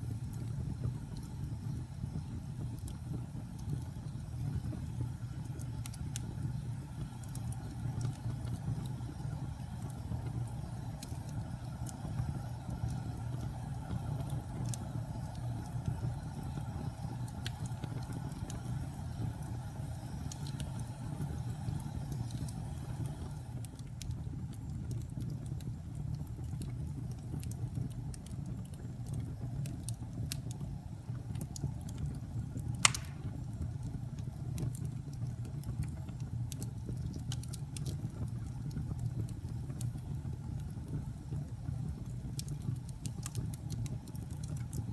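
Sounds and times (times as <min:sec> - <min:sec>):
small fire crackles: 0:00.0 - 0:44.9
wood fire rumbling: 0:00.0 - 0:44.9
sharp loud pop: 0:32.8 - 0:33.3.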